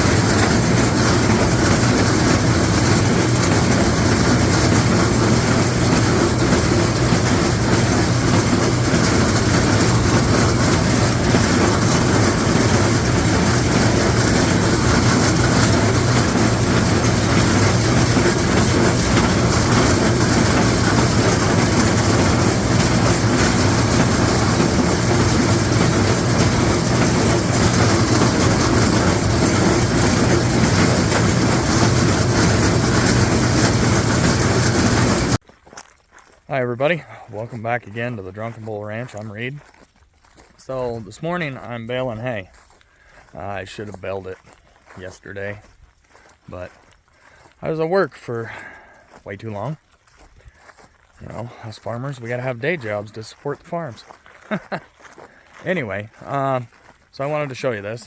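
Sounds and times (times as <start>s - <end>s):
hay baler mechanical clatter: 0.0s - 35.4s, 36.5s - 39.7s, 40.6s - 42.6s, 43.2s - 45.7s, 47.4s - 49.8s, 50.6s - 58.0s
tractor engine running: 0.0s - 35.4s, 51.2s - 58.0s.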